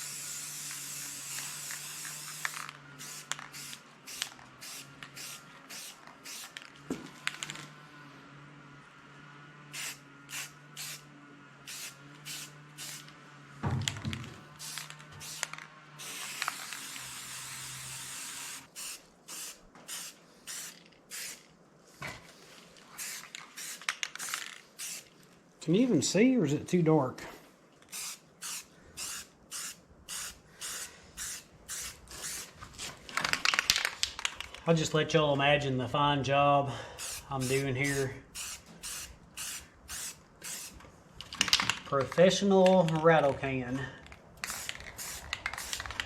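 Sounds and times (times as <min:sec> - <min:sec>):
spray paint can hissing: 0:00.0 - 0:06.6, 0:09.7 - 0:11.0, 0:11.7 - 0:13.1, 0:14.6 - 0:21.5, 0:23.0 - 0:25.1, 0:27.9 - 0:32.6, 0:37.0 - 0:40.8, 0:44.4 - 0:46.0.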